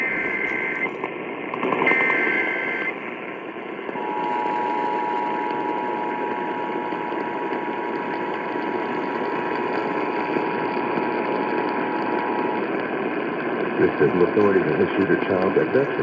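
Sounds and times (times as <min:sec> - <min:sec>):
radio static hiss: 0:00.0 - 0:16.0
two-tone alert signal: 0:04.0 - 0:09.0.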